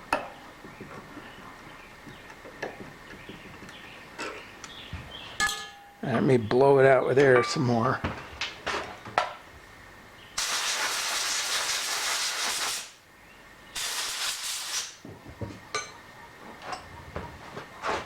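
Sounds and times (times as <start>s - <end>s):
compressed air blow gun hiss: 10.4s - 13.0s, 13.8s - 15.0s.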